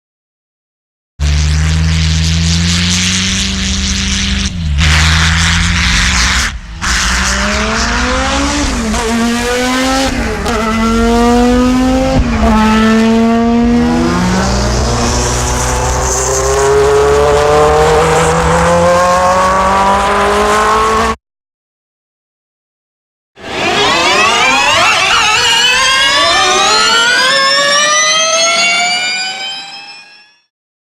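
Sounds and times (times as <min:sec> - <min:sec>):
car engine revving and accelerating: 0:01.2 - 0:21.2.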